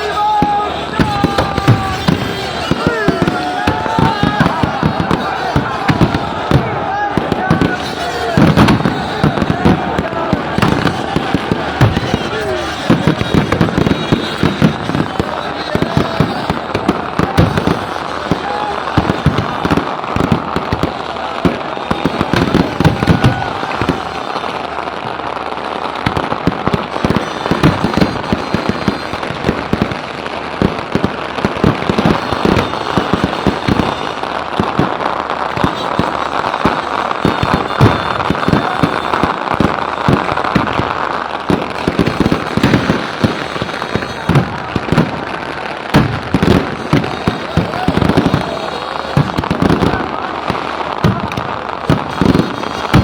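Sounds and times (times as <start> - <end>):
fireworks and firecrackers banging: 0.0 - 53.0.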